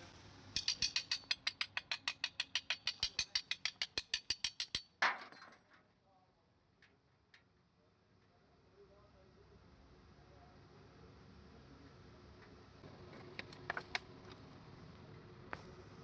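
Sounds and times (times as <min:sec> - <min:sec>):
rapid mechanical clicking: 0:00.6 - 0:04.9.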